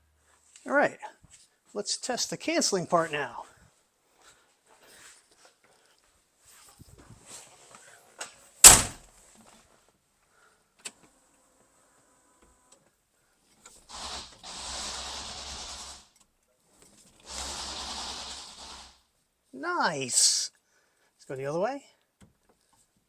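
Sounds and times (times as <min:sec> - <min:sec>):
steering wheel turning scrape: 0:13.7 - 0:16.2, 0:17.1 - 0:19.0.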